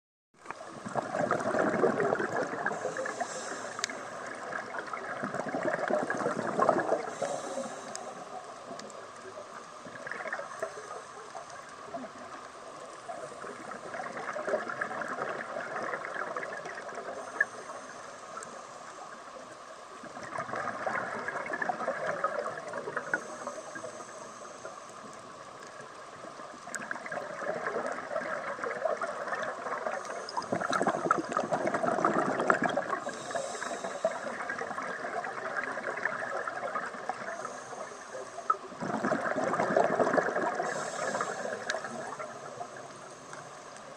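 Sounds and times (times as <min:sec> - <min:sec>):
underwater bubbly exhalations: 0:00.6 - 0:08.0, 0:09.9 - 0:10.6, 0:13.4 - 0:17.4, 0:20.0 - 0:23.3, 0:26.7 - 0:37.4, 0:38.5 - 0:42.7
regulator hiss: 0:02.4 - 0:05.5, 0:06.1 - 0:13.9, 0:16.7 - 0:19.6, 0:22.4 - 0:26.2, 0:32.6 - 0:36.1, 0:36.9 - 0:38.8, 0:40.5 - 0:43.9.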